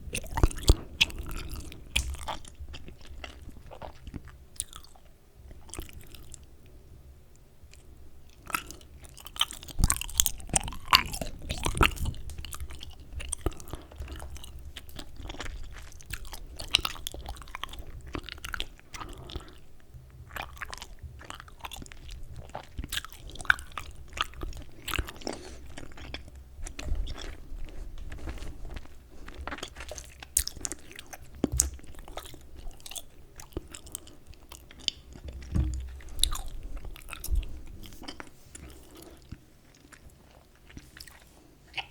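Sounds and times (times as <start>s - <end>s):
gum chewing smacks: 0.1s - 6.4s, 20.3s - 41.9s.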